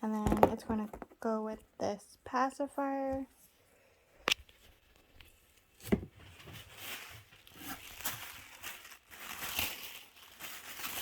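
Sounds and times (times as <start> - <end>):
packaging rustling and crinkling: 4.5 - 11.0.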